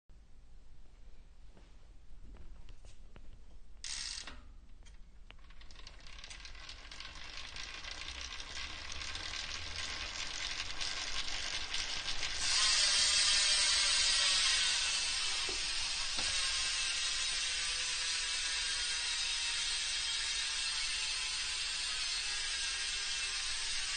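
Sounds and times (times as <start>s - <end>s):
bicycle freewheel ratcheting: 3.8s - 4.4s, 5.3s - 23.9s.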